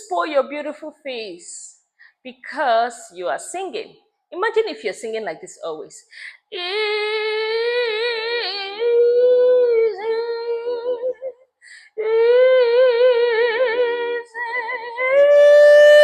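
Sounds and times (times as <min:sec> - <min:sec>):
woman singing with vibrato: 0:06.4 - 0:16.0
singer breath: 0:11.6 - 0:12.0.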